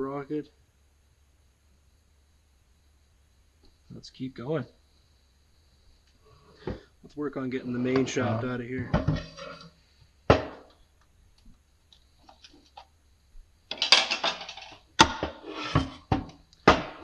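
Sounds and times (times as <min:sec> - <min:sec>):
metal clattering and scraping: 0:07.4 - 0:09.8, 0:13.7 - 0:16.3.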